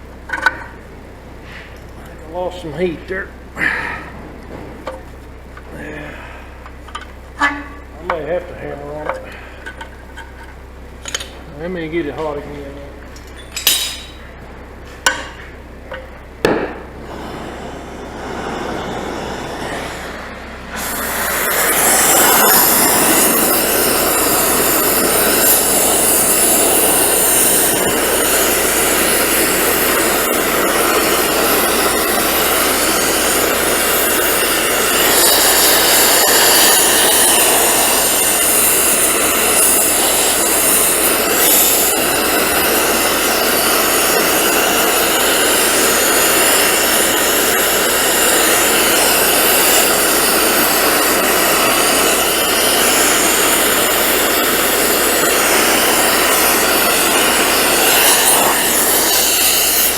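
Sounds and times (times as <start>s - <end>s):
gas torch roaring: 0.0s - 59.9s
metal clanks: 13.1s - 14.3s.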